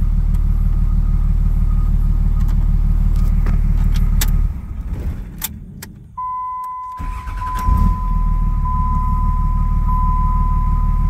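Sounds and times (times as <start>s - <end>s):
diesel engine idling: 7.0s - 11.0s.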